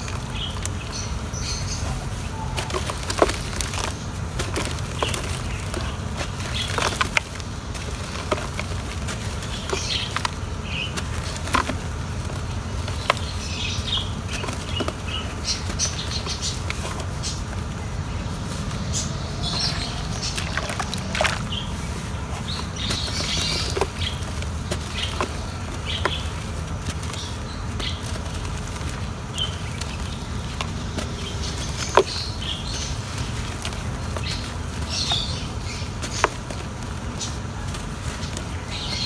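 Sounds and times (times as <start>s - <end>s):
low rumble: 17.5s - 22.8s.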